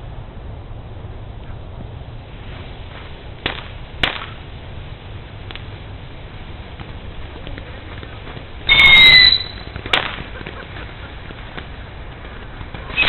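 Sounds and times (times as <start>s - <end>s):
firework whistling: 8.6s - 10.2s.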